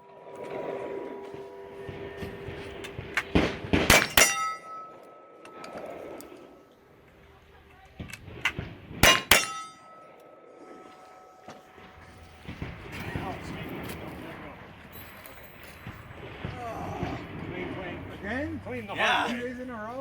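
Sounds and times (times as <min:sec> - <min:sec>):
gunshots: 0:03.2 - 0:04.8, 0:08.1 - 0:09.8
metallic clang of steel plate: 0:03.3 - 0:06.0, 0:08.4 - 0:13.0.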